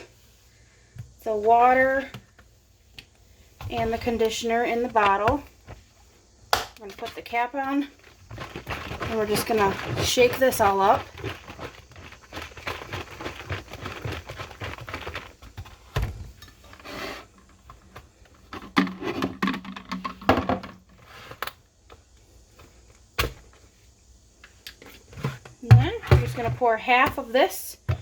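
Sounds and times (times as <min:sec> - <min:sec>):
liquid sloshing in bottle: 0:06.9 - 0:20.7
plastic bottle knocking: 0:18.5 - 0:20.9, 0:25.2 - 0:27.2.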